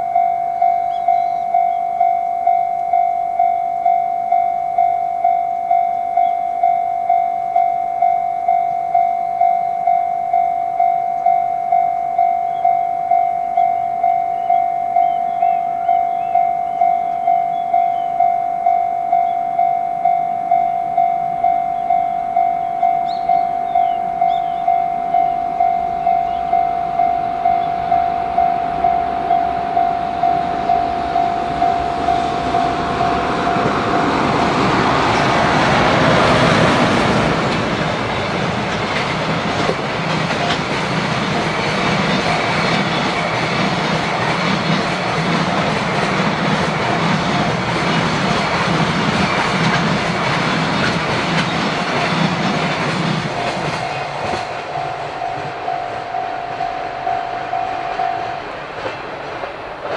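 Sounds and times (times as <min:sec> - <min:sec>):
freight locomotive passing: 0:00.0 - 0:59.9
level crossing warning bell: 0:00.0 - 0:59.9
wheels clattering over rail joints: 0:25.4 - 0:59.9.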